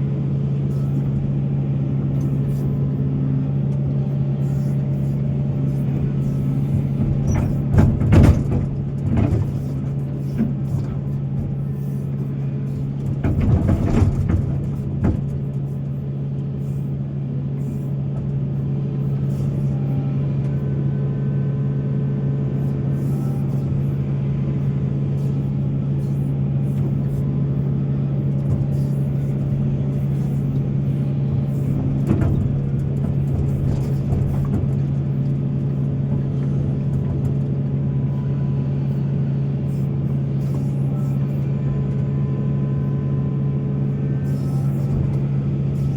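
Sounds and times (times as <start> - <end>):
excavator diesel engine running: 0.0 - 45.9
machine bucket knocks: 6.7 - 11.7, 12.9 - 15.7.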